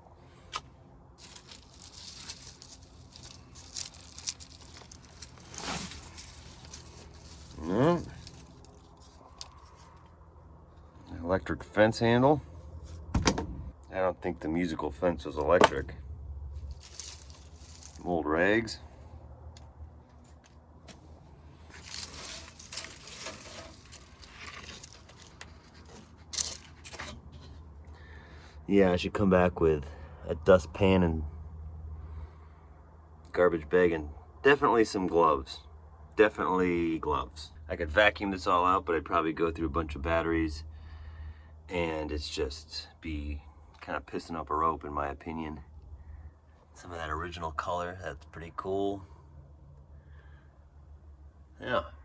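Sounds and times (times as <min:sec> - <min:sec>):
debris rustling and crinkling: 0:00.2 - 0:11.2, 0:15.4 - 0:16.0, 0:16.6 - 0:28.0
loud scrape: 0:01.2 - 0:09.9, 0:21.6 - 0:27.6.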